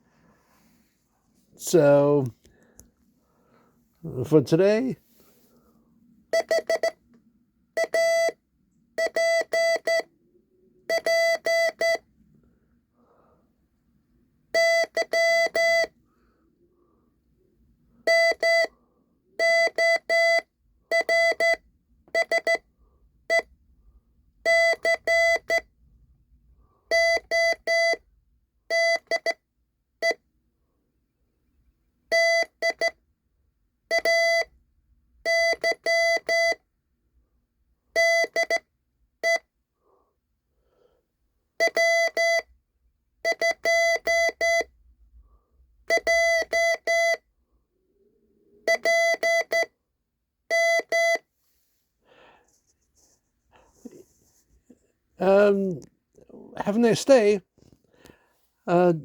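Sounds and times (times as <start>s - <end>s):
morse code beeps: 6.3s - 7.0s, 7.8s - 8.4s, 9.0s - 10.1s, 10.9s - 12.0s, 14.6s - 15.9s, 18.1s - 18.7s, 19.4s - 22.6s, 23.3s - 23.5s, 24.4s - 25.7s, 26.9s - 28.0s, 28.7s - 29.4s, 32.1s - 33.0s, 33.9s - 34.5s, 35.3s - 36.6s, 38.0s - 38.6s, 39.2s - 39.4s, 41.6s - 42.5s, 43.2s - 44.7s, 45.9s - 47.2s, 48.7s - 49.7s, 50.5s - 51.2s.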